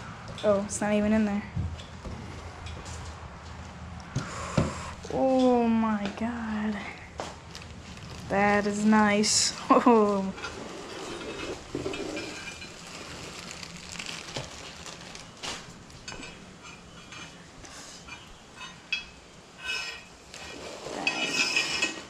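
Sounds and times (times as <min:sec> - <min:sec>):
handling clinks and rattles: 0:09.8 - 0:15.4.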